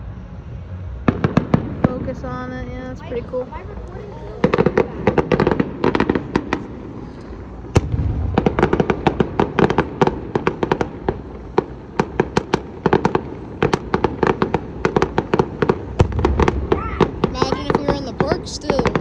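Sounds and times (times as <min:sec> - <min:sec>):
low rumble: 0:00.0 - 0:14.8, 0:15.4 - 0:19.0
sharp firework bang: 0:01.1 - 0:02.1, 0:07.7 - 0:19.0
fireworks cracking and popping: 0:04.3 - 0:19.0.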